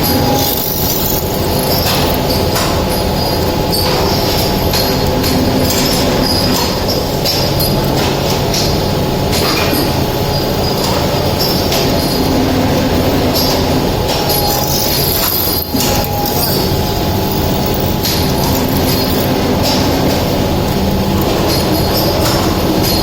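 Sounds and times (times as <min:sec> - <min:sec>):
drilling machine motor hum: 0:00.0 - 0:03.6, 0:10.0 - 0:22.9
metal squeals and clicks: 0:00.0 - 0:07.9, 0:09.4 - 0:23.0.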